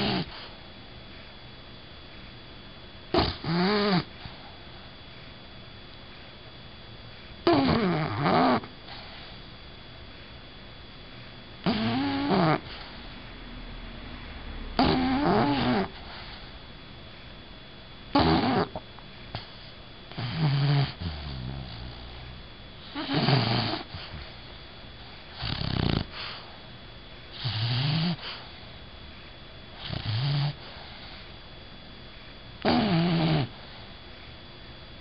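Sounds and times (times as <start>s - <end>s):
dog snoring: 0.0s - 0.5s, 3.1s - 4.7s, 7.4s - 9.4s, 11.6s - 13.2s, 14.7s - 16.5s, 18.1s - 26.6s, 27.3s - 28.6s, 29.7s - 31.3s, 32.6s - 33.9s.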